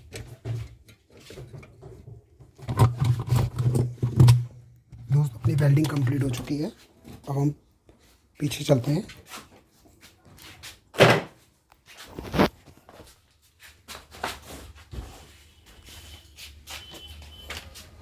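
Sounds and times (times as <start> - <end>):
knocks and clunks of handling: 0.0 - 7.3.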